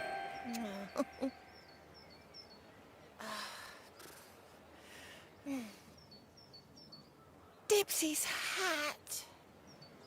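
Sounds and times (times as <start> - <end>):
faint bird chirps: 0.0 - 3.0.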